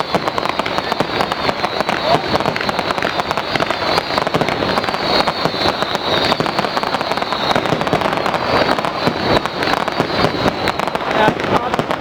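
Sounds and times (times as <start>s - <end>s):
high wavering whistle: 0.0s - 11.4s
fireworks crackling: 0.0s - 12.0s.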